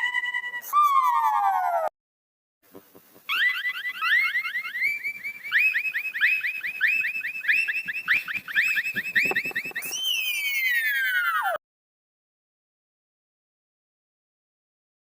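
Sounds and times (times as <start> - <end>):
rapid electronic chirping warble: 3.4 - 10.4.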